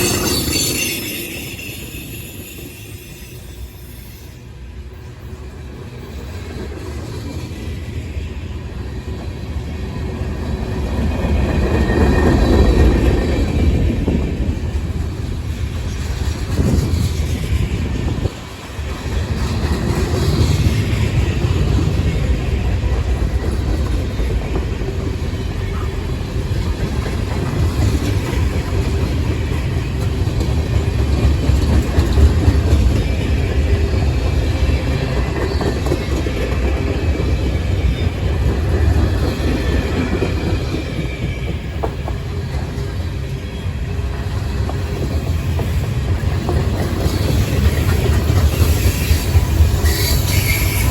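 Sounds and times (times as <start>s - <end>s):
freight train rumbling on rails: 0.0s - 50.9s.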